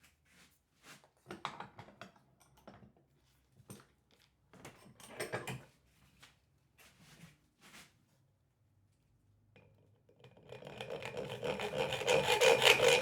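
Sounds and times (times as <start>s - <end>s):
tool scraping wood: 10.6s - 13.0s.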